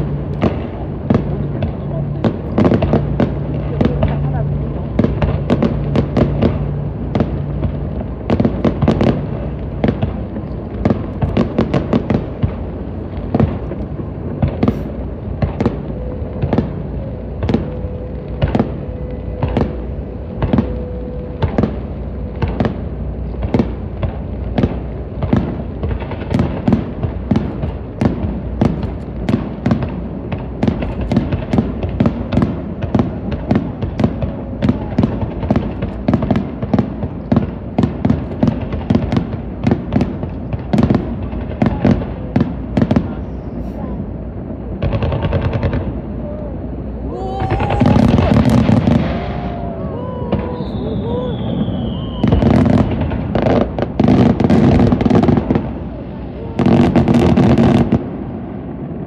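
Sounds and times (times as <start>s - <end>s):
low rumble: 0.0s - 36.0s, 42.2s - 53.8s
fireworks bursting: 0.0s - 59.0s.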